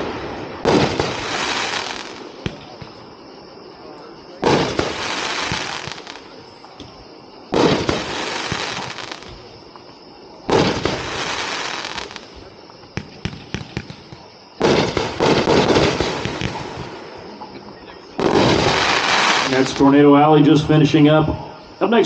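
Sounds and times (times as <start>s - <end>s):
firework rushing hiss: 0.0s - 3.0s, 4.4s - 6.4s, 7.0s - 9.6s, 10.5s - 17.2s, 18.2s - 19.8s
faint firework pops: 0.0s - 3.1s, 4.4s - 9.9s, 10.5s - 17.5s
firework bangs: 0.0s - 21.7s.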